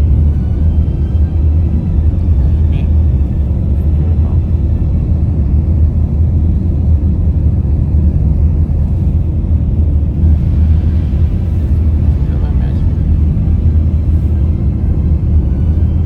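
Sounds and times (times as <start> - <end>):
coach engine and road rumble: 0.0 - 16.0.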